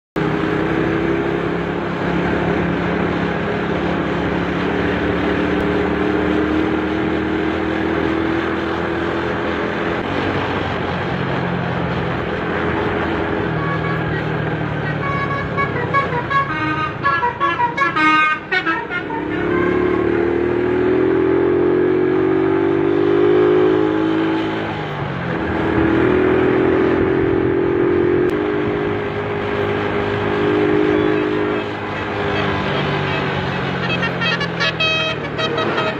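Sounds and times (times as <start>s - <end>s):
bus engine running: 0.2s - 21.8s, 23.8s - 35.9s
multi-tone bus horns: 13.4s - 20.7s, 30.2s - 35.9s.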